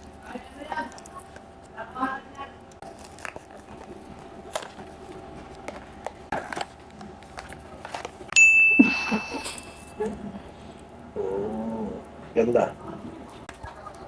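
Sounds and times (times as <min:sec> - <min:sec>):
packaging clicks and rustles: 0:00.0 - 0:08.3
bright high ding: 0:08.4 - 0:10.0.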